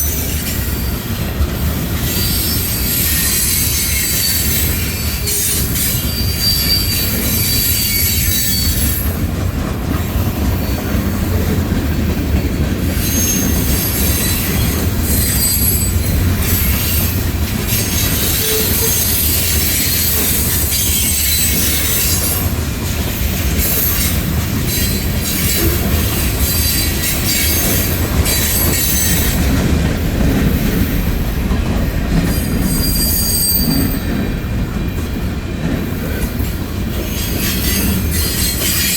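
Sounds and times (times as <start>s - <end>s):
freight train wheels rumbling: 0.0s - 38.9s
high-pitched wheel squeals: 2.1s - 9.0s, 13.0s - 17.0s, 17.6s - 22.4s, 32.4s - 34.4s.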